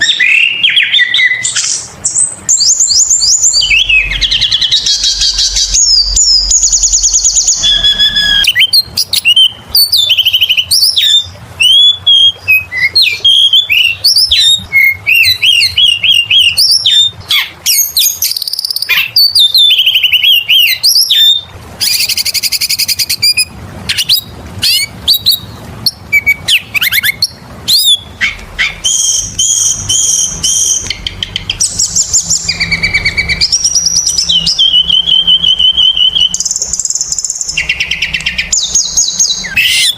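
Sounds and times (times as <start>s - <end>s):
bird singing varied song: 0.0s - 39.9s.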